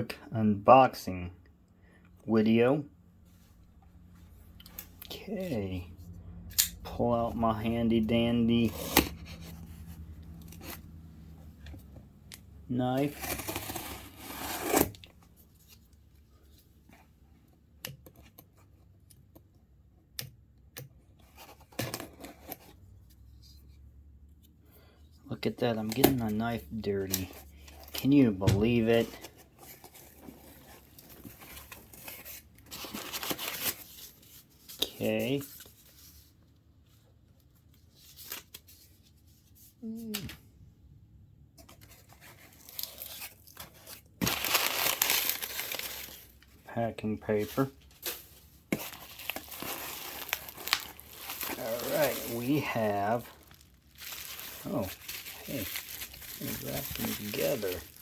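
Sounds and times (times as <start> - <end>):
cardboard and paper rustling: 12.8 - 17.2, 25.8 - 40.4, 41.5 - 58.0
knife cutting cardboard: 13.2 - 15.1.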